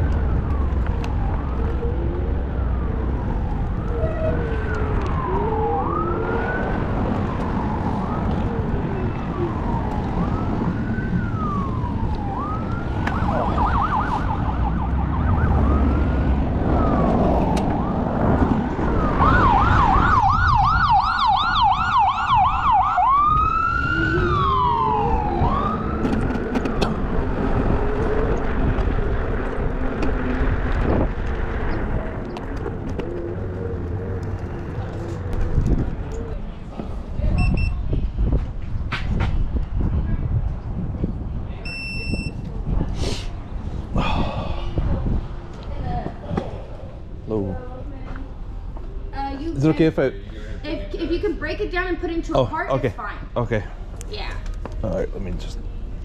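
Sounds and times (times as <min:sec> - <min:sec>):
emergency siren wailing and yelping: 0:00.0 - 0:36.4
traffic rumble: 0:00.0 - 0:56.0.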